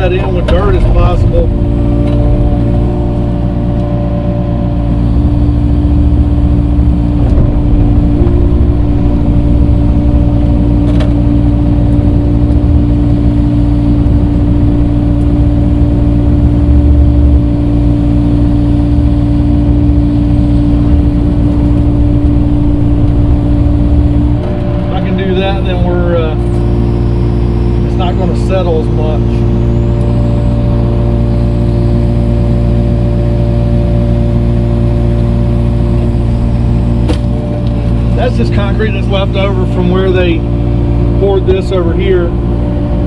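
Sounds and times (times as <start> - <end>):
tractor engine under load: 0.0 - 43.0.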